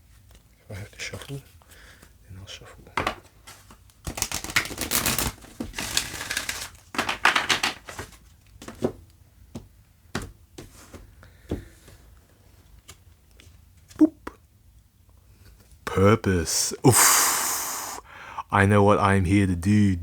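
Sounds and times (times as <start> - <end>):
cards riffling: 3.7 - 8.7.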